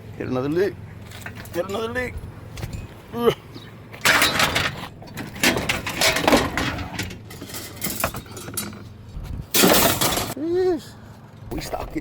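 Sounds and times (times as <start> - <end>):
scrap metal clattering: 4.0 - 10.4.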